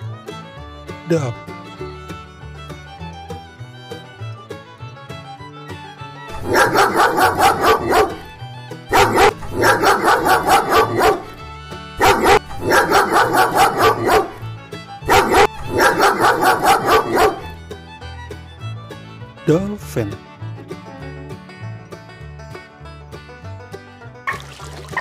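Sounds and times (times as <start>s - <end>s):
dog barking: 6.3s - 8.3s, 8.9s - 11.4s, 12.0s - 14.4s, 15.0s - 17.6s
quiet background music: 6.3s - 18.2s.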